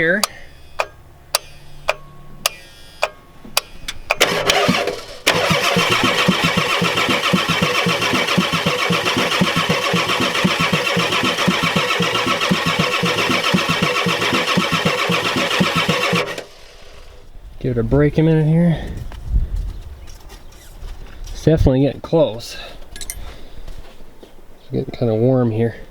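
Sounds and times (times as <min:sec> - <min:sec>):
diesel engine cranking: 0:00.0 - 0:17.3.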